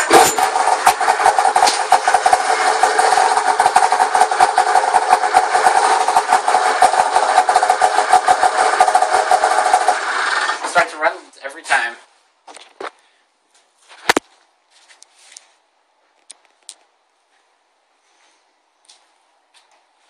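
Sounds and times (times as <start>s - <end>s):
snowmobile engine idling: 0.0s - 10.6s.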